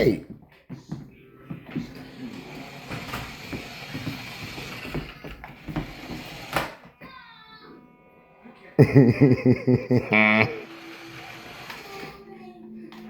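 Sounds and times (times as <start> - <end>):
toy truck motor whirring: 2.0 - 6.8, 10.2 - 12.4.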